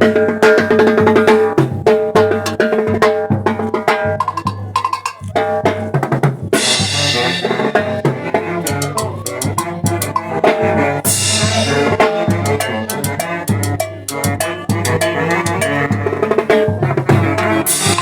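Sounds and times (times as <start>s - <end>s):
cymbal crash: 6.6s - 8.4s, 11.1s - 13.2s, 17.7s - 18.0s
live band music: 6.6s - 18.0s
cowbell: 11.1s - 16.0s, 17.7s - 18.0s.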